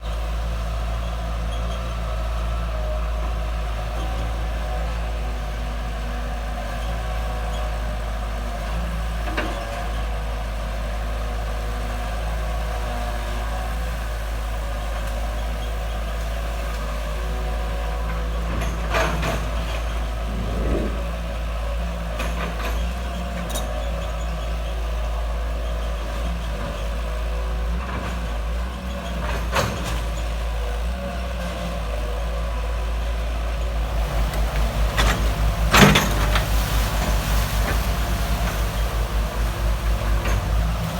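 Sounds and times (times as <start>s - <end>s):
diesel engine running: 31.8s - 40.9s.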